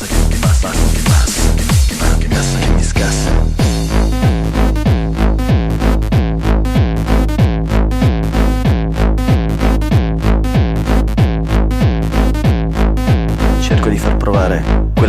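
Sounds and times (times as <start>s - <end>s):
kick drum: 0.0s - 2.0s, 3.6s - 13.9s
hi-hat hits: 0.0s - 2.2s
synth bass: 0.0s - 15.0s.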